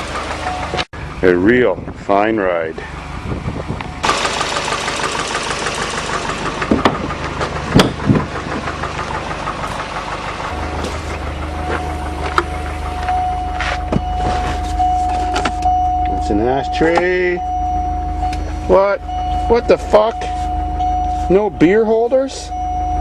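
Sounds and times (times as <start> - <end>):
car engine idling: 0.0 - 23.0
steady whine: 0.5 - 23.0
engine hiss: 4.0 - 14.8
sharp clicks and knocks: 5.8 - 9.8, 11.6 - 14.1.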